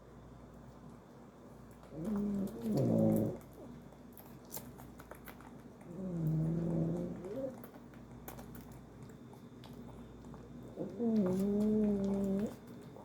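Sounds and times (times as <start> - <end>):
animal snoring: 1.9 - 3.5, 5.9 - 7.6, 10.8 - 12.6.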